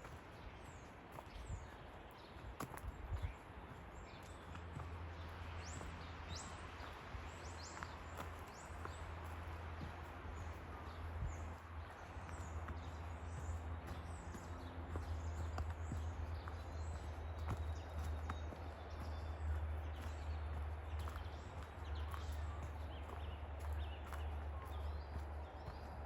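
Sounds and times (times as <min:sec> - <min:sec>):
birds chirping: 0:00.0 - 0:26.0
light footsteps: 0:00.0 - 0:26.0.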